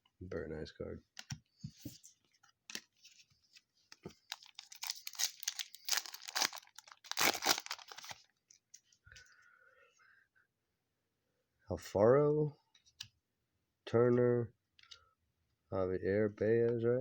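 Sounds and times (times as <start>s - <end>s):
foil wrapper tearing and crinkling: 4.3s - 8.3s.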